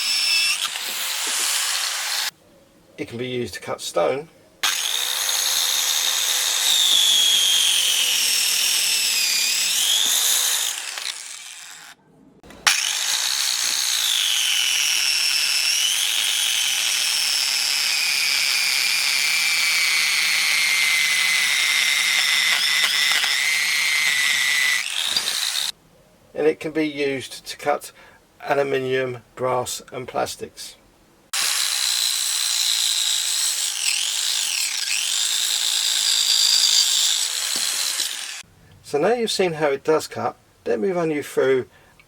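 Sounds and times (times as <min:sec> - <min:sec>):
circular saw cutting stone: 0:00.0 - 0:02.3, 0:04.6 - 0:12.0, 0:12.6 - 0:25.7, 0:31.4 - 0:38.4.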